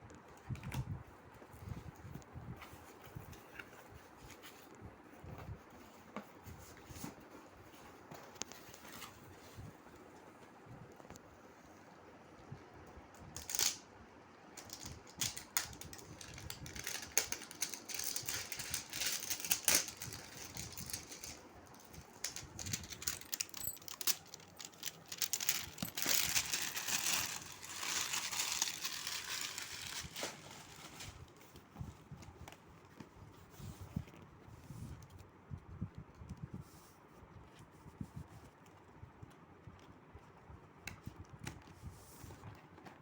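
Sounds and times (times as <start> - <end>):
plastic wrapping crinkling and tearing: 13.4 - 13.8, 14.6 - 31.6.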